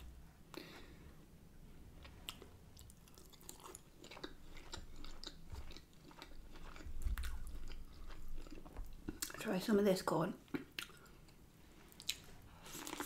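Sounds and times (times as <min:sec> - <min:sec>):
person chewing food: 0:01.8 - 0:09.4, 0:10.4 - 0:13.0.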